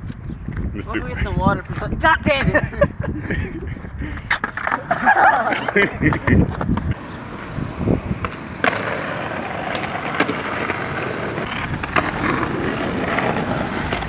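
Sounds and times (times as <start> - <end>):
skateboard clack: 4.3 - 7.5, 8.2 - 14.0
skateboard wheels rolling: 4.3 - 14.0.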